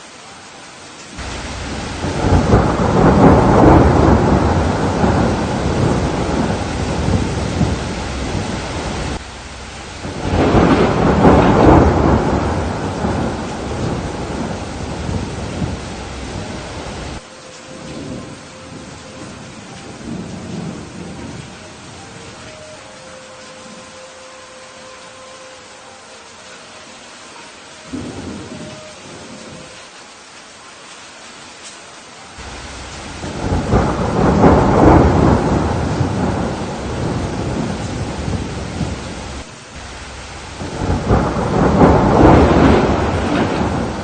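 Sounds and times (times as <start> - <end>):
rain falling: 0.0 - 44.0
thunder rolling: 1.2 - 22.4, 32.4 - 44.0.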